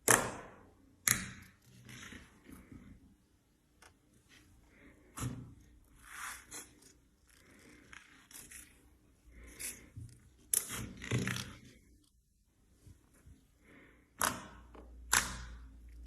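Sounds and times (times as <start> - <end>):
crisp scraping and cutting strokes: 6.0 - 9.9.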